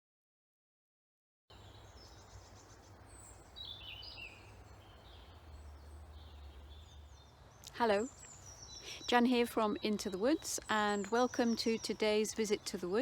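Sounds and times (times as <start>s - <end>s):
songbirds chirping: 1.5s - 13.0s.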